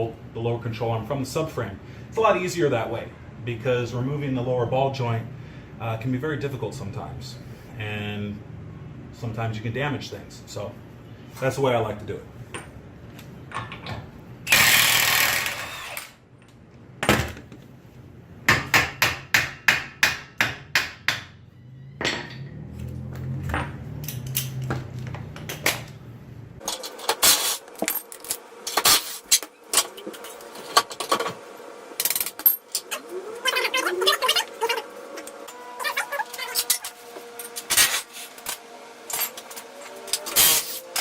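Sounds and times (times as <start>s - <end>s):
tools clanking and clicking: 12.5s - 14.1s, 22.0s - 26.0s.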